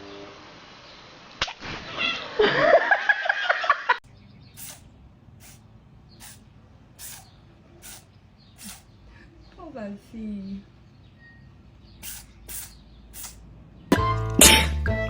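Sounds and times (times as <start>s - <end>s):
cat sneezing: 4.6s - 5.6s, 6.2s - 6.4s, 7.0s - 8.9s, 12.0s - 13.4s.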